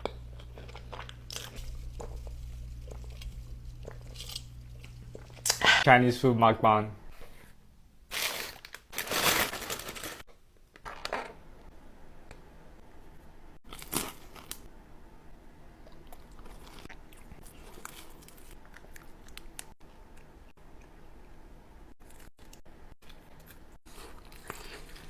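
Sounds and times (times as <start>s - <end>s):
chewing with wet clicks: 15.8s - 21.4s.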